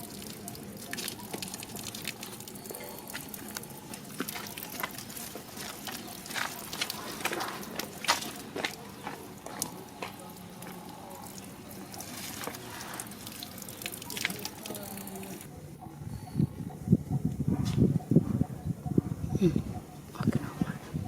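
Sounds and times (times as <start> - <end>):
water dripping: 0.0 - 16.8
low pulsing voice-like sound: 15.5 - 21.0.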